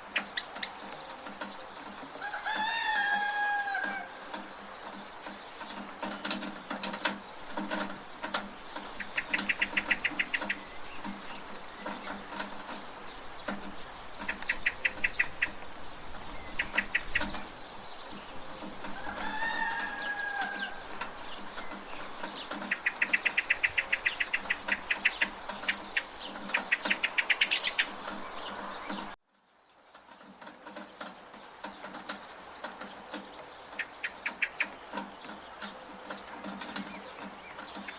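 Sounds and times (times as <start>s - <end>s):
rapid bird trills: 0.0s - 29.2s, 32.1s - 37.9s
steady rain hiss: 0.0s - 37.9s
rooster crowing: 2.2s - 4.3s, 18.9s - 21.0s.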